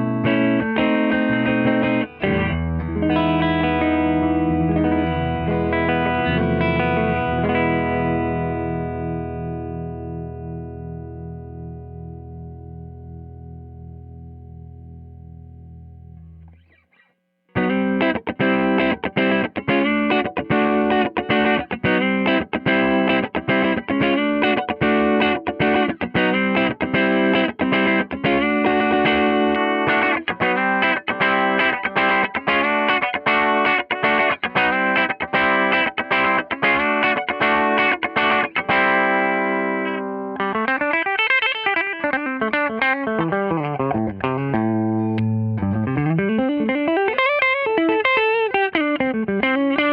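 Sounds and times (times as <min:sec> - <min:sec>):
electric guitar notes gliding in pitch: 0:00.0 - 0:16.8, 0:17.6 - 0:49.9
electric guitar strumming chords: 0:00.0 - 0:16.9, 0:17.5 - 0:49.9.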